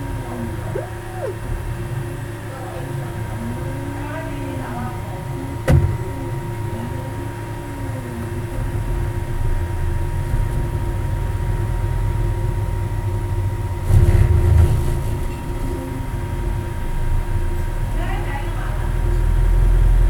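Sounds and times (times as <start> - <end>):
stepper motors whining: 0.0 - 10.0
low rumble of printer: 0.0 - 20.0.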